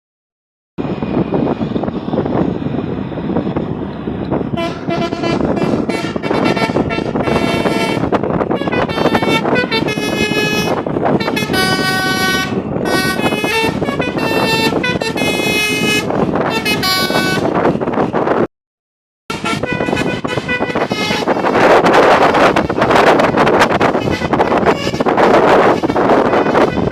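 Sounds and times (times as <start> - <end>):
heavy engine and road noise: 0.8 - 18.5, 19.3 - 26.9
multi-tone musical horn blasts: 4.5 - 18.2, 19.3 - 26.9.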